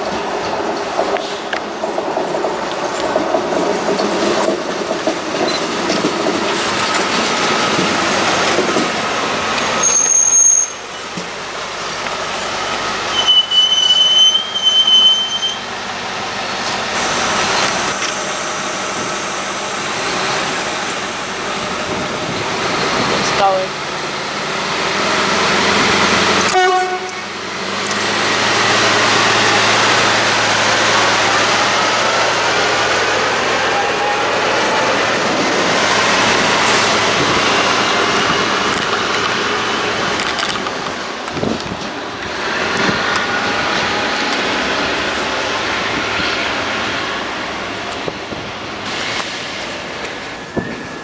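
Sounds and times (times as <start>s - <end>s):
sharp knocks of train wheels: 0.0s - 9.8s
train engine hum and running: 0.0s - 51.0s
train horn toot: 26.4s - 27.4s.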